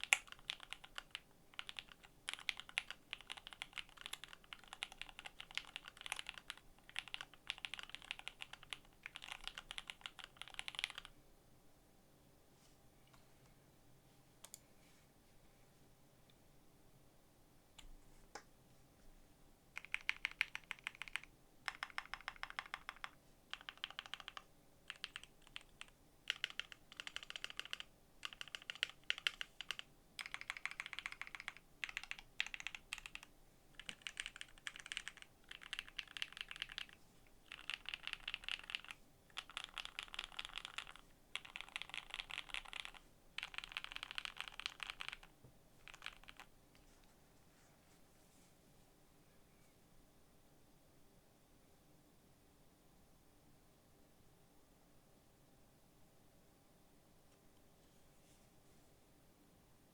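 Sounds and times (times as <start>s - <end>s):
mechanical keyboard typing: 0.0s - 11.1s, 19.8s - 46.5s.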